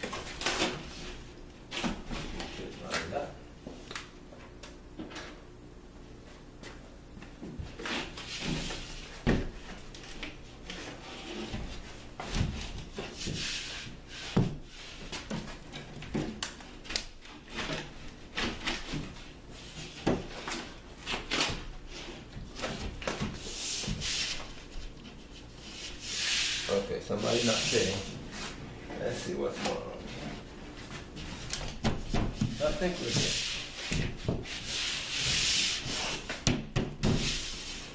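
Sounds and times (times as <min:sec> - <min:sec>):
drywall scraping and rasping: 0:07.7 - 0:15.9, 0:17.3 - 0:37.9
drywall panel knocks and thumps: 0:31.6 - 0:34.6, 0:35.2 - 0:37.4.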